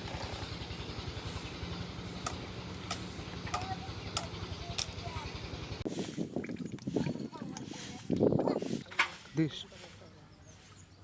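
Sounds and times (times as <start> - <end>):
small engine puttering: 0.0 - 5.9.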